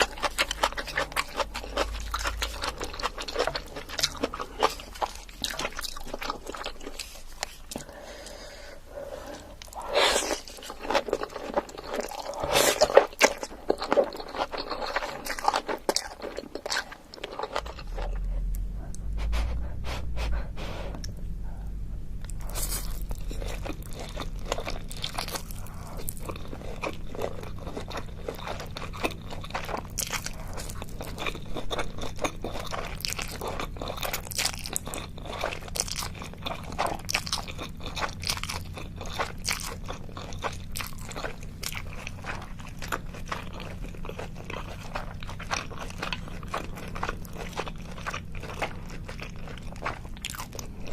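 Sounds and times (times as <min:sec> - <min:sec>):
crunchy chewing: 0:00.0 - 0:50.9
low hum: 0:16.2 - 0:50.9.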